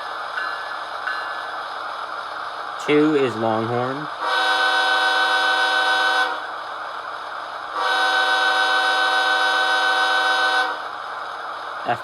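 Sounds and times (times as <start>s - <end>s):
diesel locomotive horn blasts: 4.2s - 6.5s, 7.7s - 10.9s.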